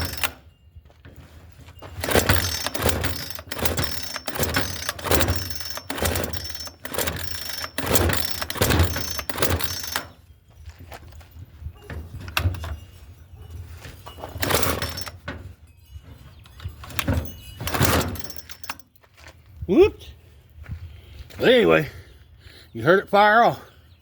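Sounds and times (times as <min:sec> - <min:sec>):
starter cord yanks: 0:00.0 - 0:00.5, 0:01.8 - 0:10.2, 0:14.1 - 0:15.4, 0:16.4 - 0:18.9.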